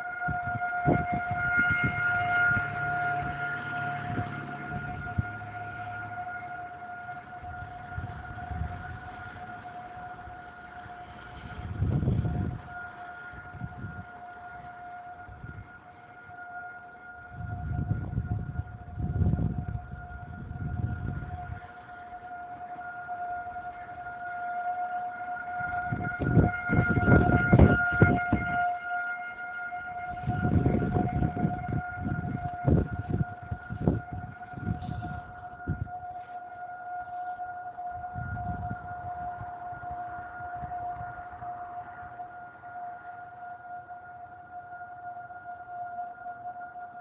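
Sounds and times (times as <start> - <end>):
siren steady tone: 0.0 - 47.0
low rumbles on microphone: 17.3 - 21.6, 30.1 - 36.2.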